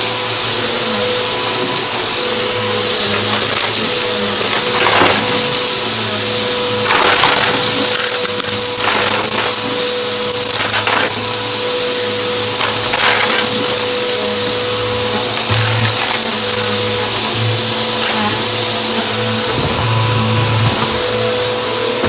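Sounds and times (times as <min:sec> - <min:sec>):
vacuum cleaner running: 0:00.0 - 0:22.0
debris crackling in vacuum: 0:00.8 - 0:22.0.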